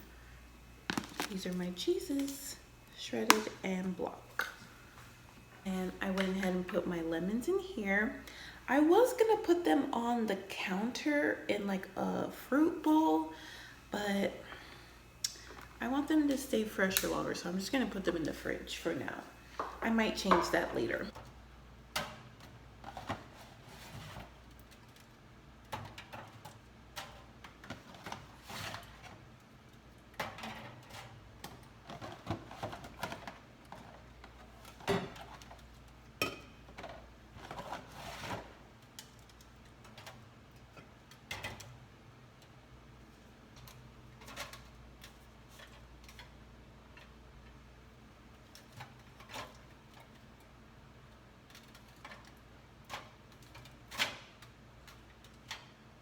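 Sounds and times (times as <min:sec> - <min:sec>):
low steady hum: 0:00.0 - 0:23.2
plastic containers clicking and knocking: 0:00.9 - 0:01.4.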